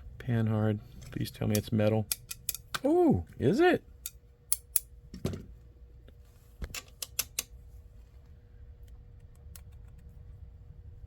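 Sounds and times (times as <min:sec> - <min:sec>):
low steady hum: 0:00.0 - 0:11.0
sharp clicks of small parts: 0:01.5 - 0:02.8, 0:06.7 - 0:07.5.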